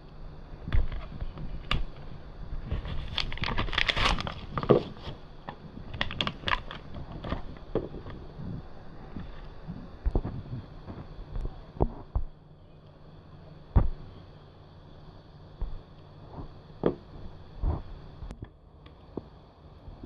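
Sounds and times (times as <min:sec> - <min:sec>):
crinkling and crackling: 0:00.6 - 0:12.4.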